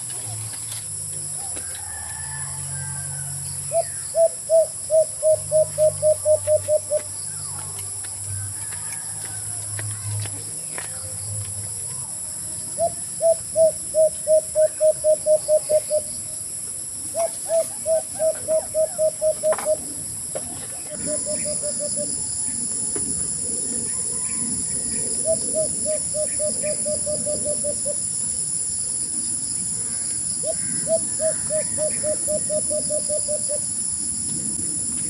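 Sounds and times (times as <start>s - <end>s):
dove calling hoo notes: 2.4s - 7.7s, 12.7s - 16.4s, 17.0s - 28.5s, 29.8s - 34.6s.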